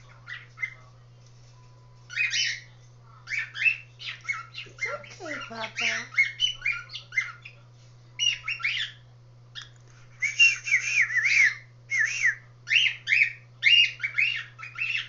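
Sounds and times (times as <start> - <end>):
cockatiels whistling chirps: 2.1 - 2.7, 8.2 - 9.0, 9.6 - 15.0.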